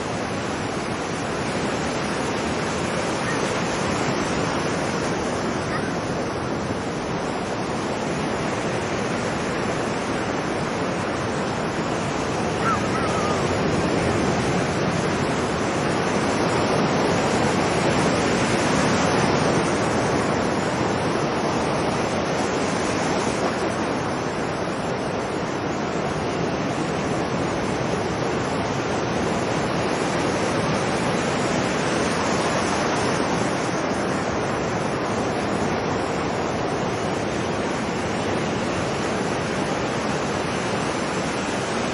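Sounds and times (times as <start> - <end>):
ocean surf breaking on beach: 0.0 - 41.9
faint seagull call: 5.7 - 6.0, 12.6 - 13.5.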